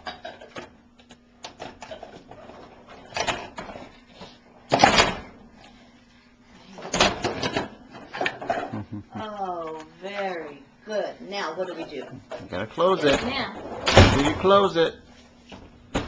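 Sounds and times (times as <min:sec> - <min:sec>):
dishes clattering: 0:06.9 - 0:08.8.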